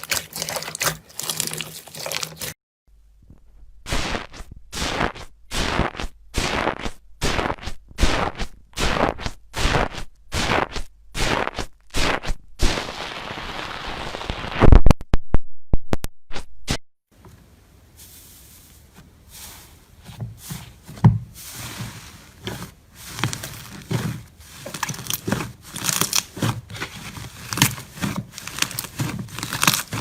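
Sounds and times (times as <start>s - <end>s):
slime squished by hand: 3.9s - 13.0s, 23.0s - 30.0s.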